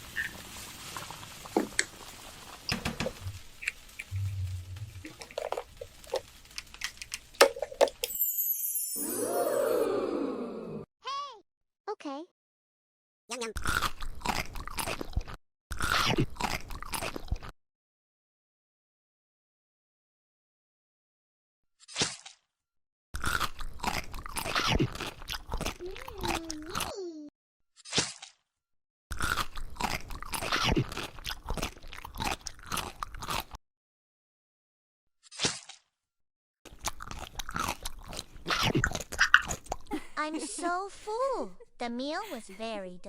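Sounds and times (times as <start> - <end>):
crunchy chewing: 3.3 - 4.4, 5.0 - 7.8, 13.6 - 17.5, 23.2 - 26.8, 29.1 - 33.6, 36.7 - 39.9.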